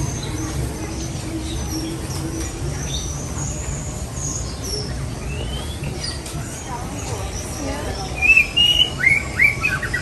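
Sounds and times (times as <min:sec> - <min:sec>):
birds chirping and calling: 0:00.0 - 0:10.0.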